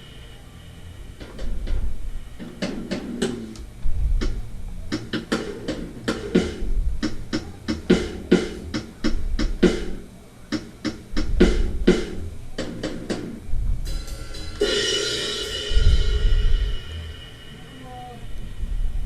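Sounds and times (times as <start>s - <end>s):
kick and snare drum hits: 4.2s - 13.3s
cymbal crash: 13.9s - 19.0s.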